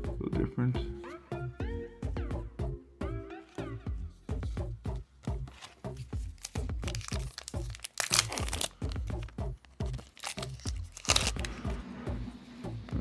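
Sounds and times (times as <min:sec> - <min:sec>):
electronic music with steady beat: 0:00.0 - 0:10.0, 0:10.7 - 0:13.0
foil wrapper crinkling and tearing: 0:05.5 - 0:11.8.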